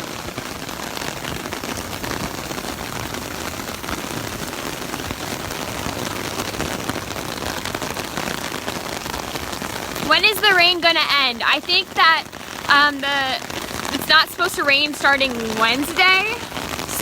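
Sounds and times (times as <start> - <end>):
heavy rain on an umbrella: 0.0 - 17.0.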